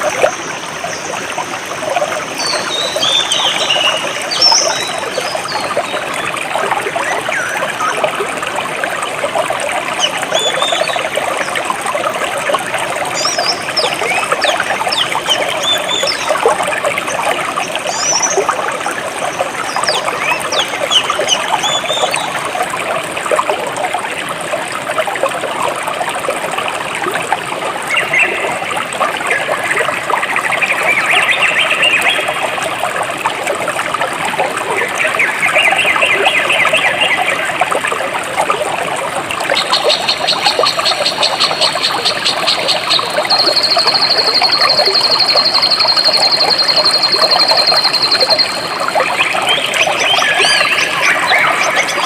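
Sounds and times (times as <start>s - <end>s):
stream trickling over rocks: 0.0s - 52.0s
birds chirping: 13.2s - 16.5s, 39.6s - 52.0s.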